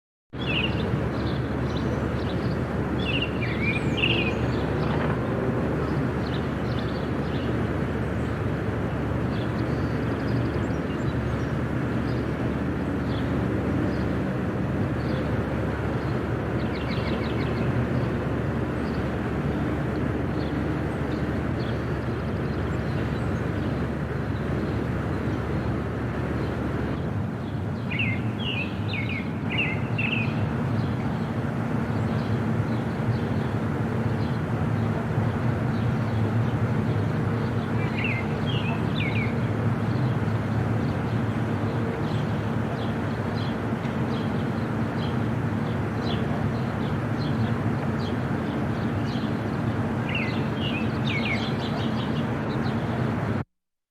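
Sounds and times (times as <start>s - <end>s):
small birds chirping: 0.4s - 53.1s.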